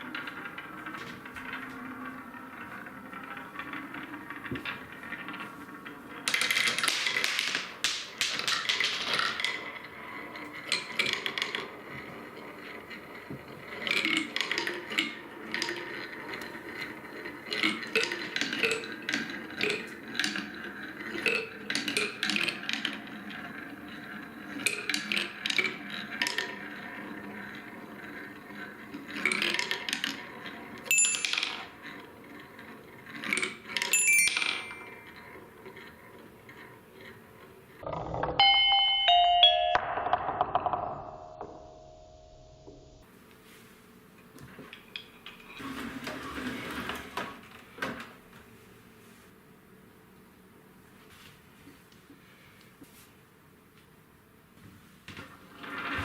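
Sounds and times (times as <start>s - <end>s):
marbles clicking and clacking: 0.0s - 37.1s
marbles rolling on wood: 0.0s - 38.4s.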